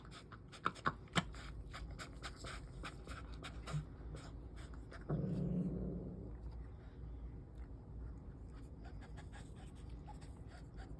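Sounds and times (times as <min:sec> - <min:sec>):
cat chewing wet food: 0:00.0 - 0:05.2.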